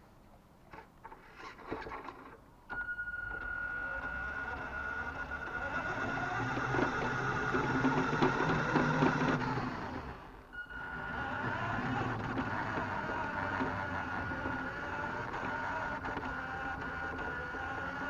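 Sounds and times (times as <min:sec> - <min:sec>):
mechanical drivetrain rattle: 0:00.7 - 0:18.0
electric motor whining: 0:02.7 - 0:18.0.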